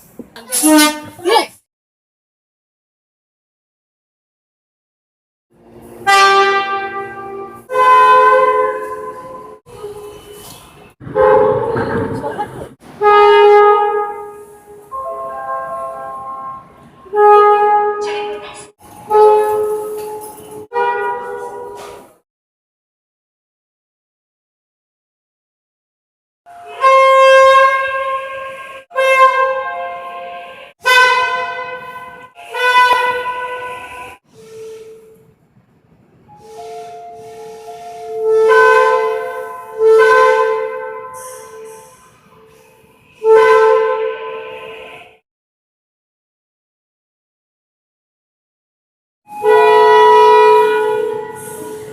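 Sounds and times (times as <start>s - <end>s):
loud train horn blasts: 0.4s - 1.3s, 5.9s - 10.4s, 11.0s - 11.8s, 13.0s - 22.2s, 26.5s - 35.2s, 36.4s - 45.2s, 49.3s - 51.9s
train horn chord: 6.0s - 10.2s, 13.0s - 22.2s, 26.5s - 35.2s, 36.4s - 45.2s, 49.3s - 51.9s.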